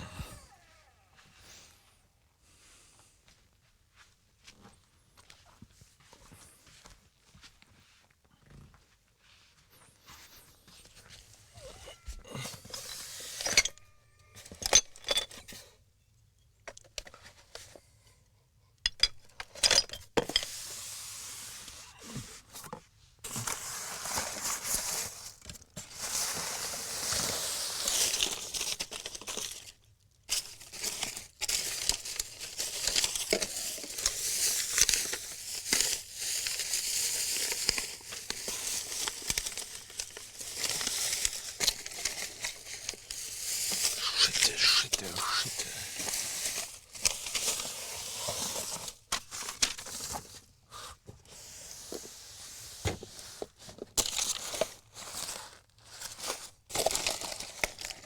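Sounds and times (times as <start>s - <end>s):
rustling and crinkling: 2.7s - 15.7s, 20.2s - 58.0s
clicks and clinks: 12.7s - 13.8s.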